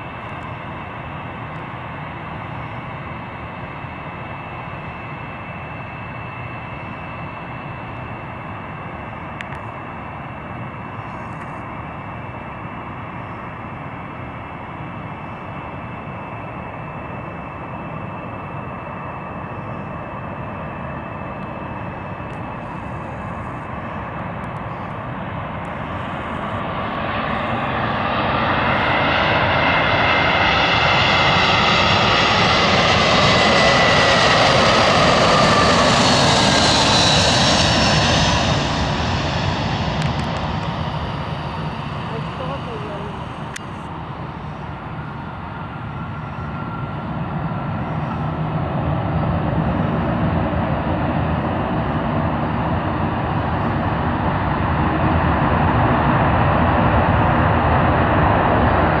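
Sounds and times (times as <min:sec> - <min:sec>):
jet airliner passing: 0:00.0 - 0:59.0.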